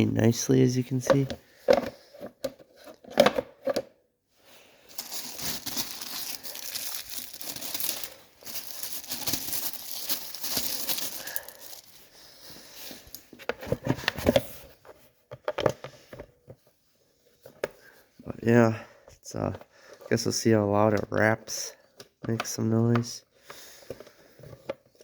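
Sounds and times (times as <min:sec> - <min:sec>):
plastic crinkling and rustling: 0:04.9 - 0:12.1.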